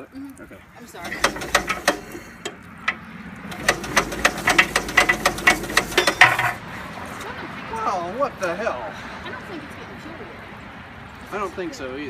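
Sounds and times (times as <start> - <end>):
engine cranking with pops: 0.9 - 6.6.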